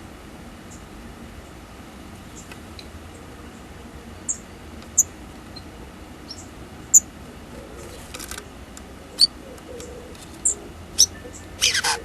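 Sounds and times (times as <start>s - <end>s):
faint bird ticks: 7.8s - 11.7s
bird high chirps: 9.1s - 12.0s.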